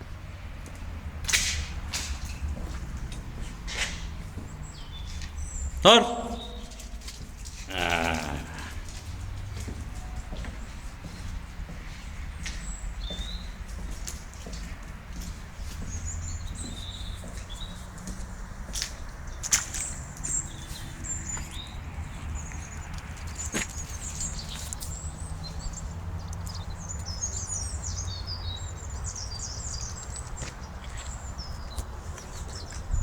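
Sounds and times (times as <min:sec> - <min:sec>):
small birds chirping: 0:00.0 - 0:33.0.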